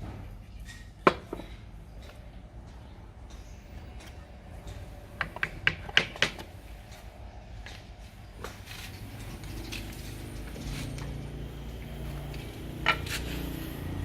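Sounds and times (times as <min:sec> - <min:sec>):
sharp knocks and clicks: 0:00.7 - 0:08.6.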